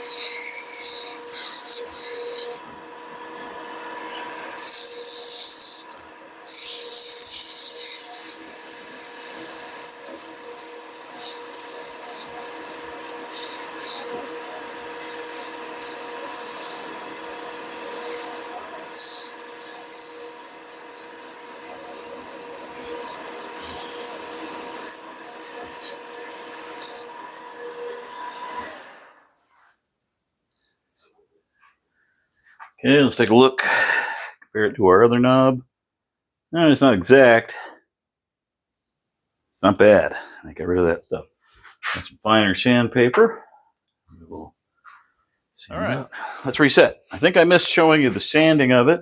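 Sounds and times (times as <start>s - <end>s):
sandpaper hiss on wood: 0.0s - 2.6s, 4.5s - 5.9s, 6.5s - 17.0s, 17.7s - 27.1s
wood lathe hum: 0.0s - 29.3s.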